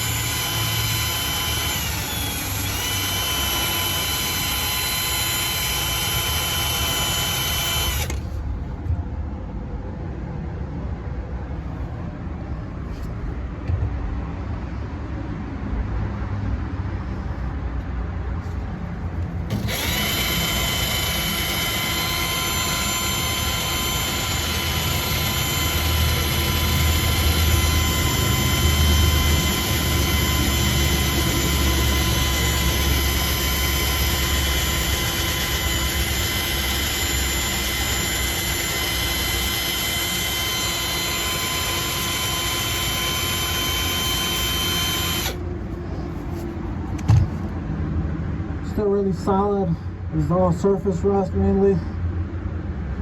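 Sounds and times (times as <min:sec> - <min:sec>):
power tool wire brush on steel: 0:00.0 - 0:08.2, 0:19.5 - 0:45.4.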